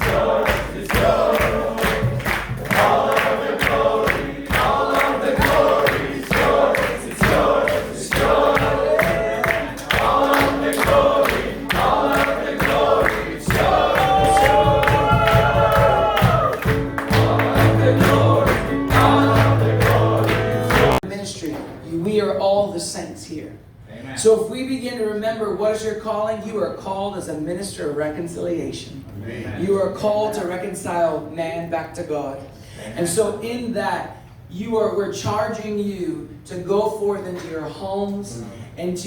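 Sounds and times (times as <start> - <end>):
steady beat: 0.0 - 21.0
voices singing together: 0.0 - 21.0.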